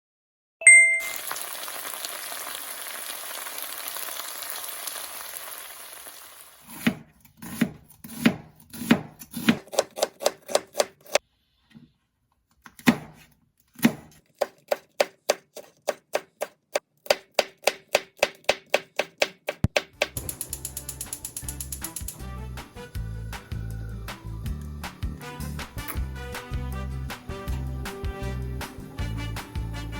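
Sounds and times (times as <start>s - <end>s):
short beep: 0.6s - 1.2s
knife chopping on cutting board: 6.7s - 11.2s, 12.7s - 20.2s.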